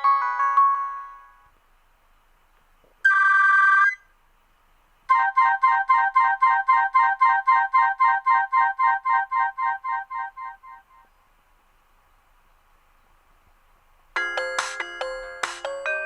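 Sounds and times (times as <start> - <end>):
fast repeating electronic notes: 5.1 - 11.0.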